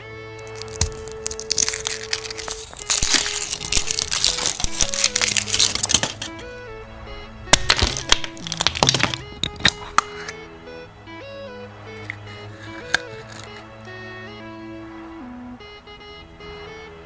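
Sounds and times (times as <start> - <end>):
background music: 0.0 - 17.0
foil wrapper crinkling: 0.4 - 6.4, 7.5 - 10.3.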